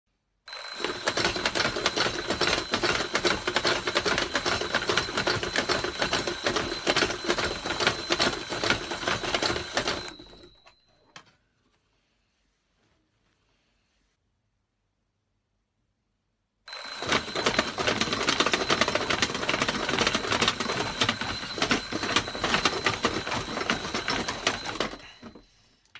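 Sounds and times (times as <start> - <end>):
alarm clock bell ringing: 0.5 - 11.1, 16.7 - 25.6.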